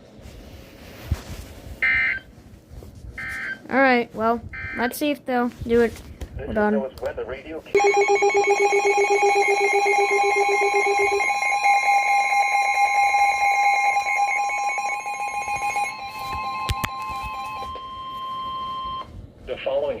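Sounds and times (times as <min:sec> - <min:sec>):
electronic alert tones: 0:07.8 - 0:19.0
high steady alarm tone: 0:07.8 - 0:19.1.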